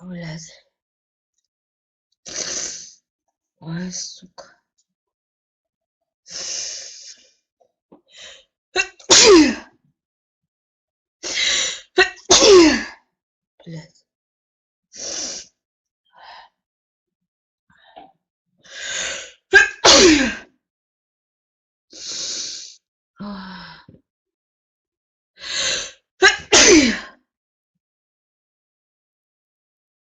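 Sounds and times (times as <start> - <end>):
woman sneezing: 8.8 - 9.7, 11.3 - 12.9, 19.6 - 20.4, 26.2 - 27.0.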